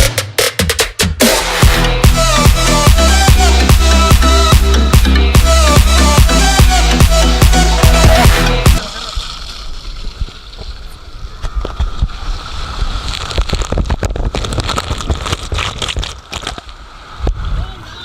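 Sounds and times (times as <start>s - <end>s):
electronic dance music: 0.0s - 8.9s
water splashing and sloshing: 8.8s - 17.5s.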